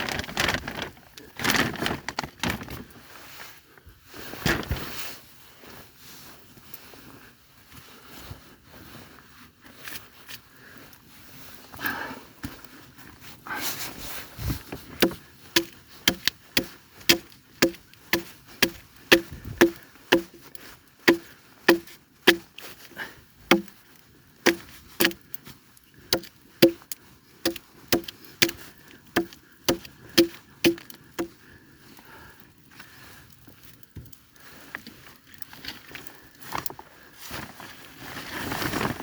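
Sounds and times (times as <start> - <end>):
wood chopping strikes: 15.0 - 20.5, 21.1 - 22.5, 23.5 - 23.8, 24.5 - 25.2, 26.1 - 28.6, 29.2 - 31.4.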